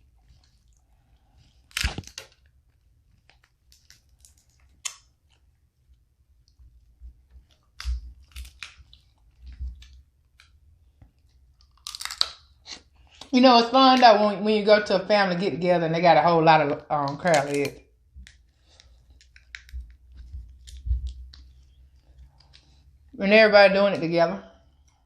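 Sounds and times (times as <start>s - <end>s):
crab shells cracking: 1.6s - 2.5s, 7.7s - 10.6s, 11.6s - 13.3s, 17.3s - 22.7s
person chewing: 11.2s - 13.3s.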